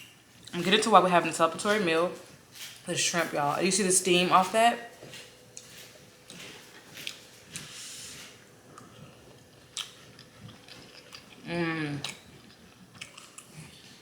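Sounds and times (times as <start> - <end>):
woman chewing with wet smacking: 8.7 - 14.0
woman humming mmm: 11.4 - 12.2.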